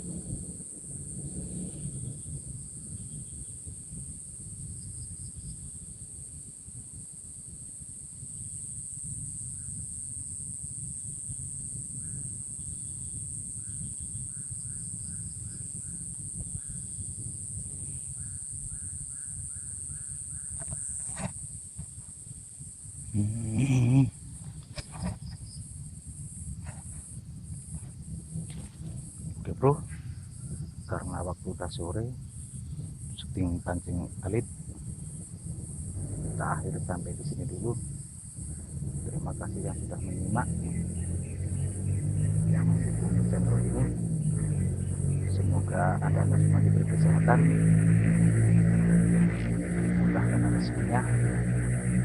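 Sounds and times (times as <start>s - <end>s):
high-pitched insect drone: 7.1s - 52.0s
low rushing rumble: 22.4s - 52.0s.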